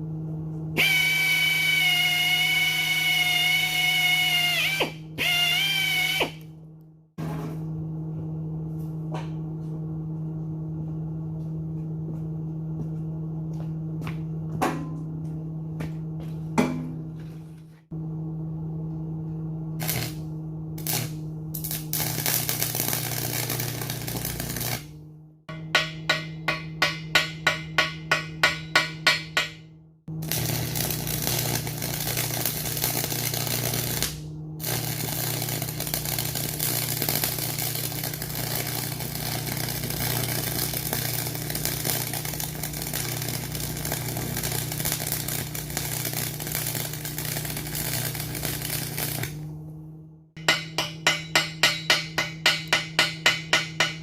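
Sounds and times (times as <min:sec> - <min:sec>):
electric arc welding crackle: 0:00.8 - 0:06.4, 0:19.8 - 0:25.0, 0:30.2 - 0:49.5.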